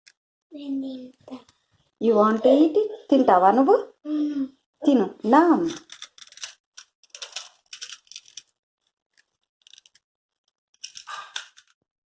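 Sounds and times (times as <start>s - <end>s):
crisp snacks crunching: 10.8s - 11.7s.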